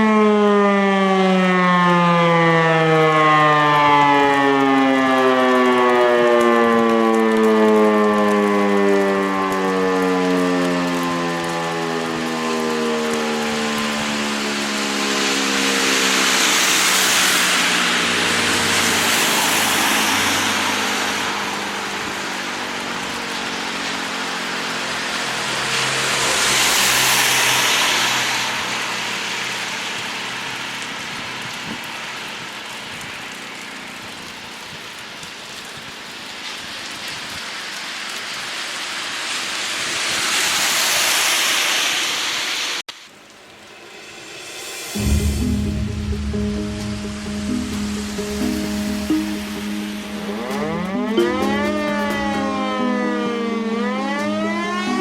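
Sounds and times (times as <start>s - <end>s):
siren winding down: 0.0s - 28.5s, 44.9s - 55.0s
broad hiss: 37.6s - 46.3s.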